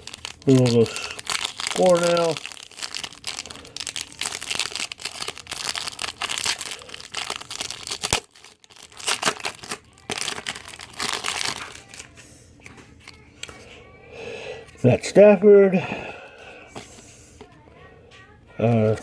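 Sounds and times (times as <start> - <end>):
plastic wrapper tearing and crinkling: 0.0 - 12.2.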